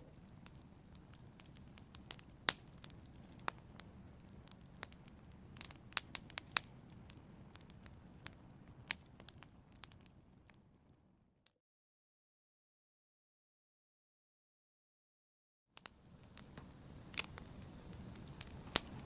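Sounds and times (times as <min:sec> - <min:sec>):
fire crackling and popping: 0:00.0 - 0:11.1, 0:15.8 - 0:19.0
low rumble of flames: 0:00.0 - 0:11.1, 0:15.8 - 0:19.0.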